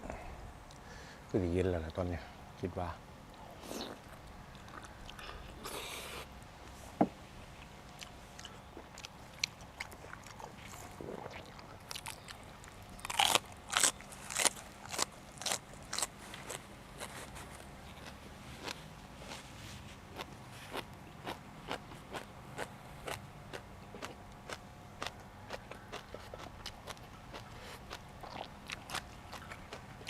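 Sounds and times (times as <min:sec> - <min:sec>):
chewing and biting: 0:03.7 - 0:06.2, 0:07.6 - 0:30.0
crunching raw vegetables: 0:07.6 - 0:30.0.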